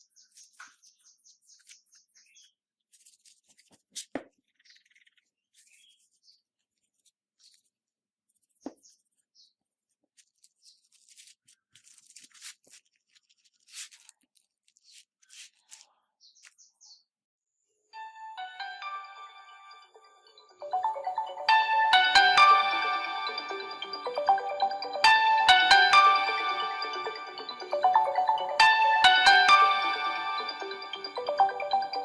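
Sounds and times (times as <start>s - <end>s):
smartphone parts clicking and scratching: 0.0s - 16.7s.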